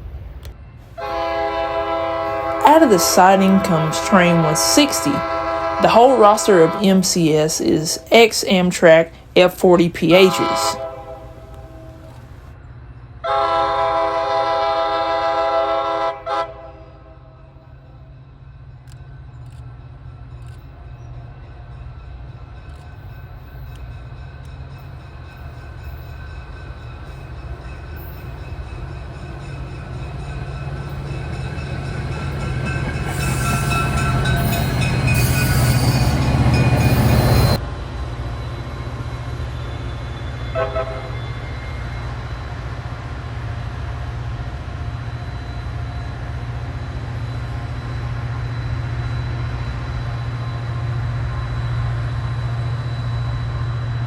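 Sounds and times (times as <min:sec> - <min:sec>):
diesel locomotive passing: 0:00.0 - 0:54.0
train horn: 0:00.9 - 0:07.7, 0:10.1 - 0:12.4, 0:13.2 - 0:17.6, 0:28.0 - 0:37.6, 0:40.4 - 0:41.4.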